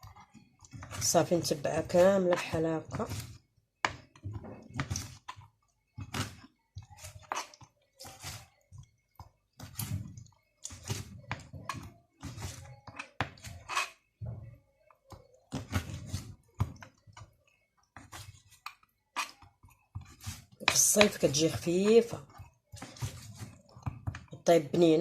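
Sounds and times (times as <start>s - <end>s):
knife cutting on cutting board: 12.2s - 14.0s.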